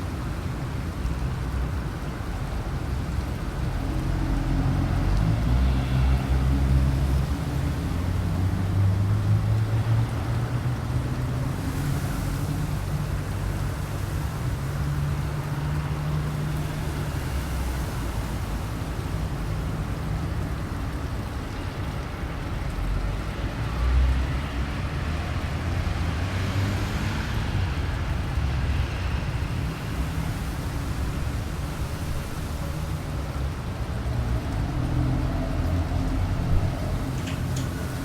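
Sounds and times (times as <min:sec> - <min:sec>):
gusty wind: 0:24.2 - 0:38.0
wind buffeting microphone: 0:27.6 - 0:38.0.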